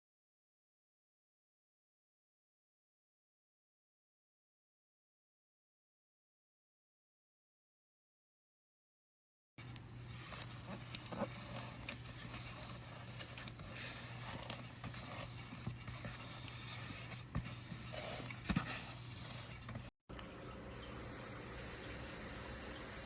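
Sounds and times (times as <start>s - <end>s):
scraping and rustling: 9.6s - 19.9s.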